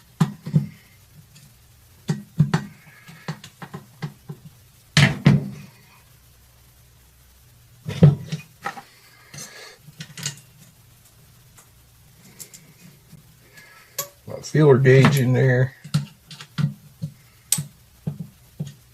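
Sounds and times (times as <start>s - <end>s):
metal tools clinking and knocking: 9.3s - 10.5s.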